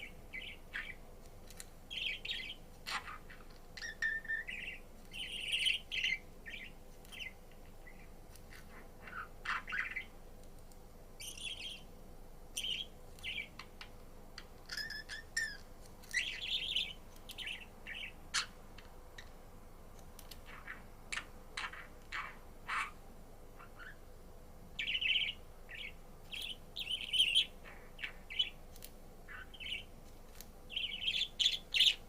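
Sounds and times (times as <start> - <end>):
budgerigar chirping and warbling: 1.9 - 8.0, 8.6 - 10.1, 14.7 - 18.6, 20.5 - 23.0, 23.6 - 24.0, 24.8 - 28.6, 29.3 - 29.8, 30.7 - 32.0.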